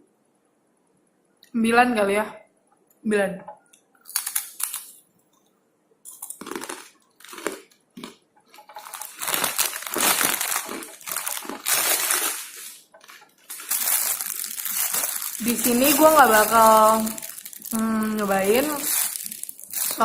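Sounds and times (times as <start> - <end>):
plastic packaging crinkling: 4.1 - 5.1, 6.1 - 20.0.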